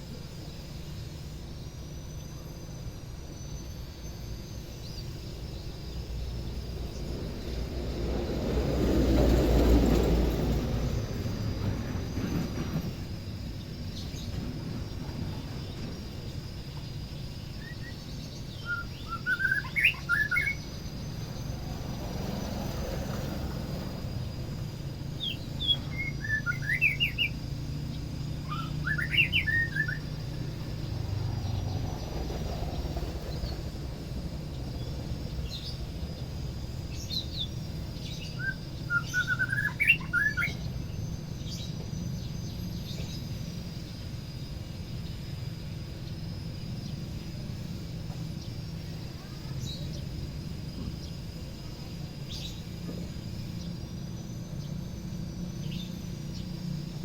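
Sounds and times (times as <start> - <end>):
bird singing whistled notes: 10.0 - 22.5, 24.2 - 33.6, 34.6 - 44.1, 53.4 - 56.8.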